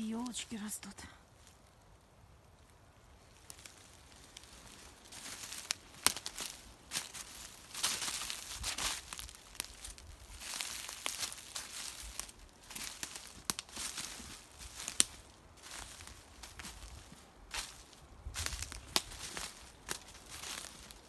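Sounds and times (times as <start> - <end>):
footsteps crunching on dry leaves: 3.2 - 21.0.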